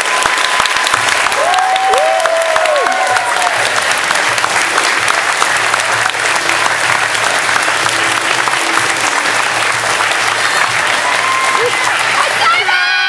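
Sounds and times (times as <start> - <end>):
audience applauding: 0.0 - 13.0.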